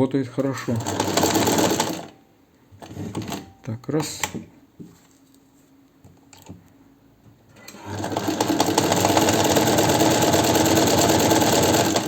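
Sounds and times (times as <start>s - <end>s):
sewing machine stitching: 0.4s - 2.2s, 2.8s - 3.5s, 7.6s - 12.0s.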